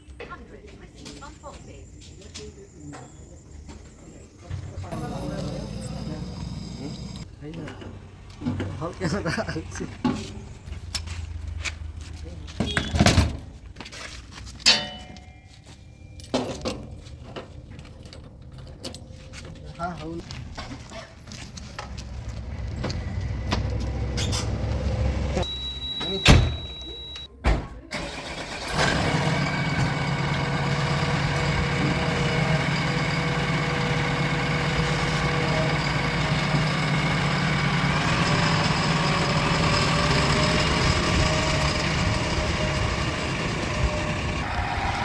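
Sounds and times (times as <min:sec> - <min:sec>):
heavy diesel engine running: 0:02.9 - 0:12.0, 0:21.2 - 0:27.3, 0:28.0 - 0:45.0.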